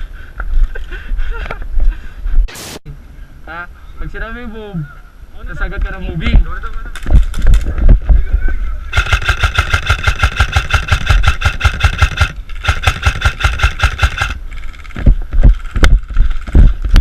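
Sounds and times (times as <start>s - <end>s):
airsoft gun full-auto bursts: 8.9s - 14.8s.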